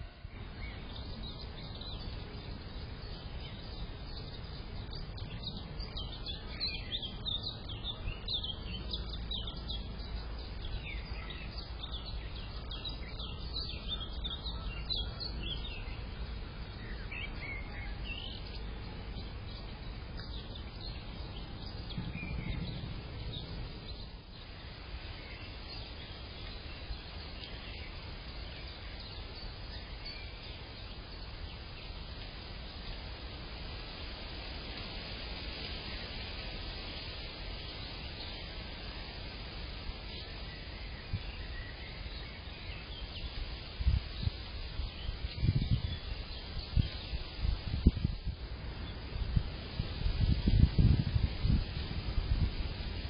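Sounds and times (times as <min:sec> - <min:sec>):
birds chirping: 0:00.0 - 0:32.2.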